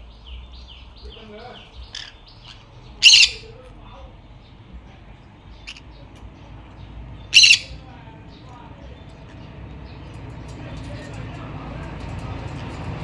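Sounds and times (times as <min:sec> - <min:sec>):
parrots squawking: 0:01.1 - 0:03.7, 0:05.5 - 0:06.2, 0:07.2 - 0:07.9.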